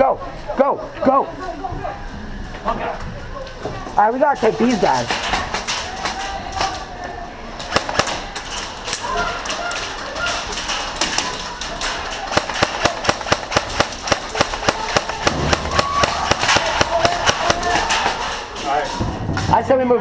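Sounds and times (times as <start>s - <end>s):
airsoft guns firing: 7.6s - 19.0s.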